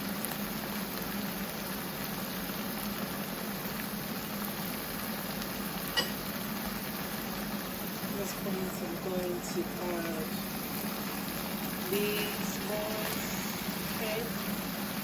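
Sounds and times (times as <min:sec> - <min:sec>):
stew simmering in a pot: 0:00.0 - 0:15.0
sharp metallic clink: 0:06.0 - 0:06.2.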